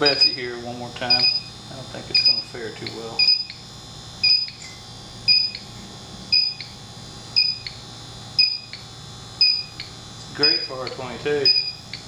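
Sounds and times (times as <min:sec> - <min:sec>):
leak detector beeping: 0:00.0 - 0:07.8, 0:08.4 - 0:12.0.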